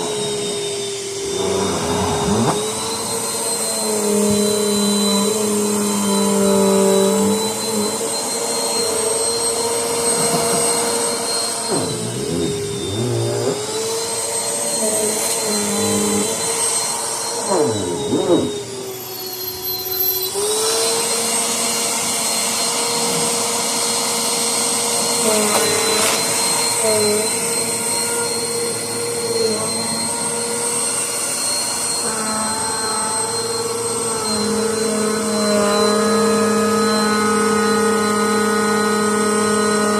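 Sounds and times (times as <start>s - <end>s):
vacuum cleaner motor whining: 0.0s - 39.9s.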